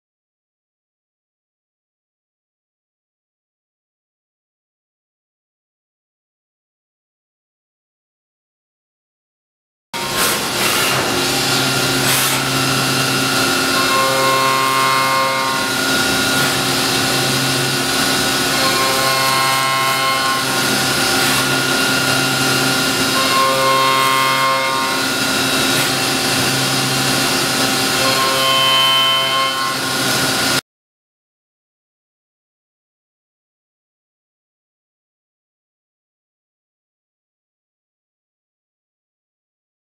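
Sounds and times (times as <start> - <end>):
machine cutting noise: 10.0 - 30.6
machine whine: 10.0 - 30.6.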